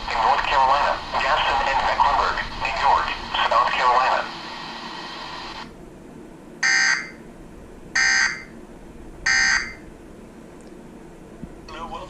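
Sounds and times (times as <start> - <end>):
shrill digital data tones: 9.3 - 9.8.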